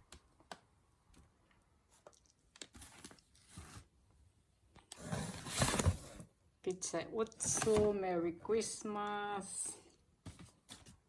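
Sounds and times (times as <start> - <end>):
packages rustling and crinkling: 1.9 - 4.0, 4.9 - 6.3, 7.2 - 8.0, 10.3 - 11.0.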